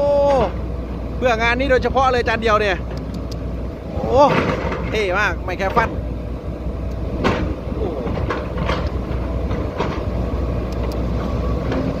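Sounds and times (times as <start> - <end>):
diesel engine running: 0.0 - 12.0
metallic clanks: 4.2 - 6.0.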